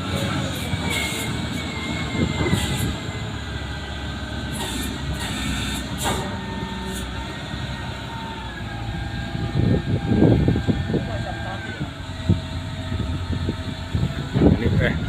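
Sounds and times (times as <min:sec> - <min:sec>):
large machine engine rumbling: 0:00.0 - 0:15.0.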